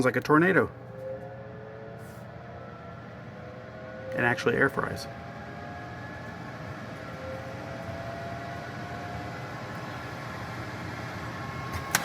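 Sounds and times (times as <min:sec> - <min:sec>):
faint whining tones: 0:00.0 - 0:12.0
convection fan whooshing air: 0:03.1 - 0:12.0.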